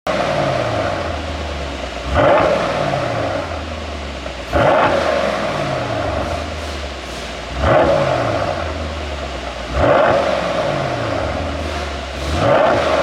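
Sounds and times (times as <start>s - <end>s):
car engine revving: 0.1s - 13.0s.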